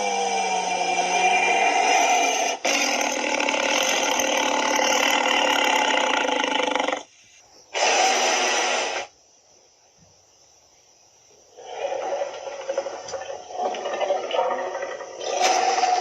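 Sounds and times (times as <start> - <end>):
dinosaur roar: 0.0 - 7.1, 11.6 - 16.0.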